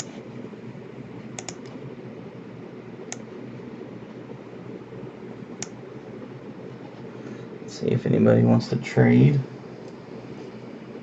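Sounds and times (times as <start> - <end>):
computer mouse clicks: 1.4 - 1.8.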